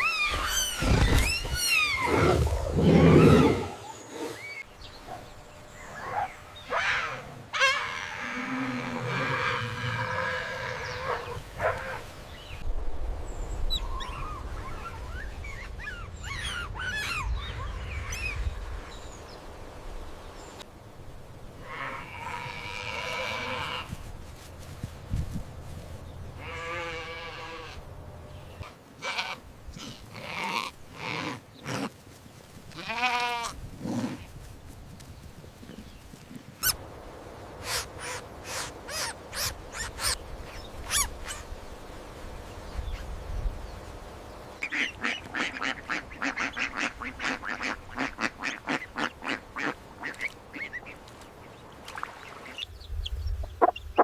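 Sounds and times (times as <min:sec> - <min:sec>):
bleating: 0:26.4 - 0:27.8, 0:29.0 - 0:31.9, 0:32.7 - 0:34.1
animal calls: 0:28.6 - 0:34.3, 0:37.6 - 0:40.2, 0:53.4 - 0:54.0.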